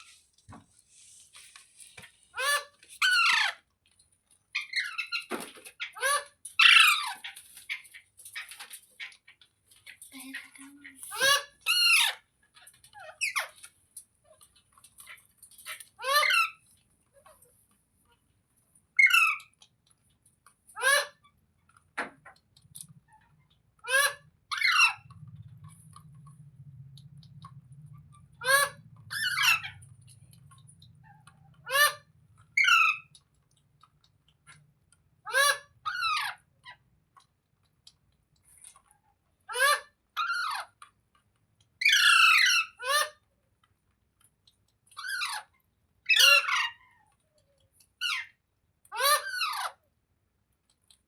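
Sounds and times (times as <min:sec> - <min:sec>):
parrot chirps: 0:02.3 - 0:03.6, 0:18.9 - 0:19.6, 0:28.0 - 0:29.8, 0:31.0 - 0:33.1, 0:41.8 - 0:43.2, 0:46.1 - 0:47.0
parrot squeaky calls: 0:02.3 - 0:03.6, 0:04.6 - 0:07.8, 0:11.1 - 0:12.2, 0:13.0 - 0:13.6, 0:15.6 - 0:16.6, 0:19.0 - 0:19.5, 0:20.8 - 0:21.2, 0:23.8 - 0:25.1, 0:28.1 - 0:29.9, 0:31.0 - 0:33.1, 0:35.2 - 0:36.8, 0:39.5 - 0:40.8, 0:41.8 - 0:43.2, 0:44.9 - 0:45.5, 0:46.1 - 0:47.0, 0:48.0 - 0:48.3, 0:48.9 - 0:49.8
faint low hum: 0:24.8 - 0:35.0
parakeet squawking: 0:28.2 - 0:29.8, 0:31.0 - 0:33.1, 0:46.1 - 0:46.9.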